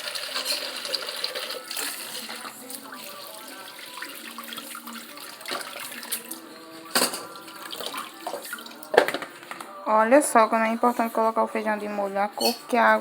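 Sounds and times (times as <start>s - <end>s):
tap water running into sink: 0.0s - 9.4s.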